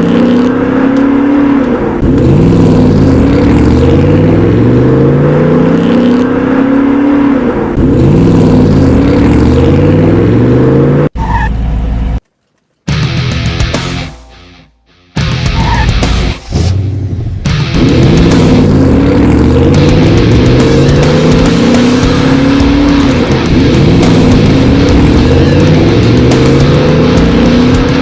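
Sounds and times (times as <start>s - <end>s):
race car engine accelerating: 0.0s - 12.2s, 15.5s - 28.0s.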